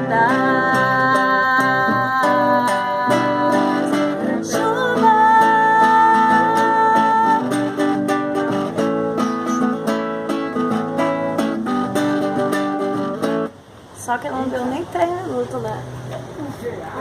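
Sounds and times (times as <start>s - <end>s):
strummed and plucked guitar: 0.0s - 13.6s.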